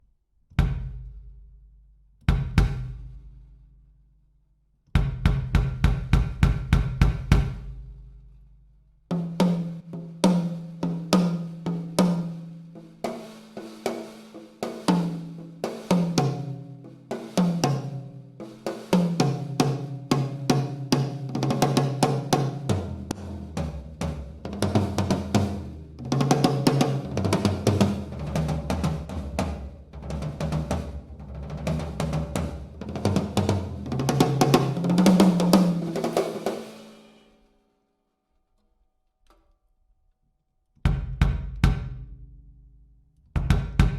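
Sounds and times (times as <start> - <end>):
bass drum thumps: 0.6 - 1.6, 2.2 - 3.4, 4.9 - 8.1, 40.9 - 42.5, 43.3 - 43.9
drum kit playing: 9.1 - 37.2.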